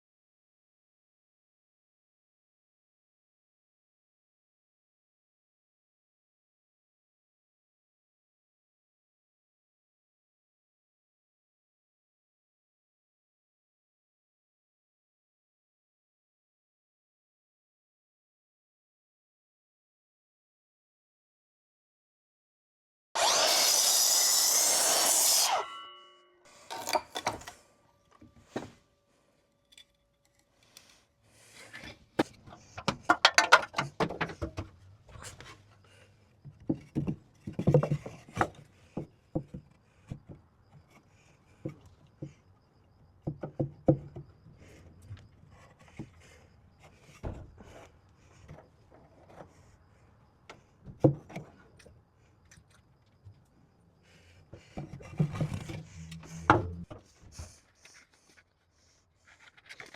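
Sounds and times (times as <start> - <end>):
brief ringing: 25.5 - 26.5
wooden boards knocking and rubbing: 32.2 - 34.7, 36.6 - 40.4, 54.6 - 57.1.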